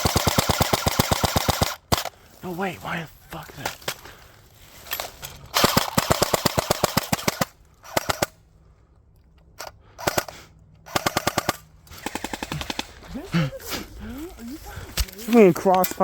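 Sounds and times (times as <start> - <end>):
airsoft guns firing full auto: 0.0 - 2.1, 5.5 - 8.4, 10.0 - 13.1.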